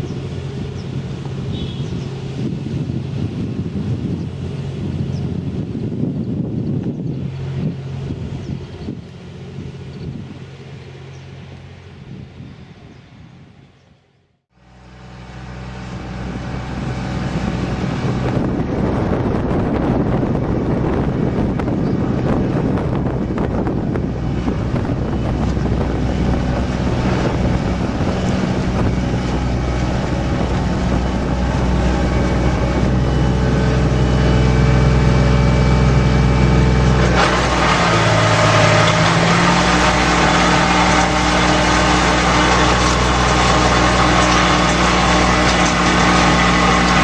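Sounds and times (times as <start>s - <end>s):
diesel engine running: 0.0s - 47.0s.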